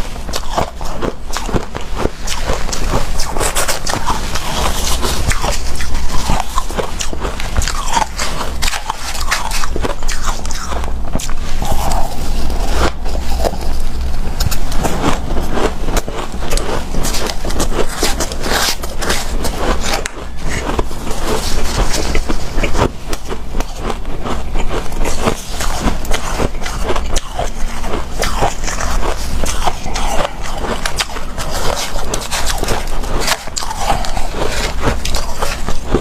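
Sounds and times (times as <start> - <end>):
ice being chewed: 0.0 - 36.0.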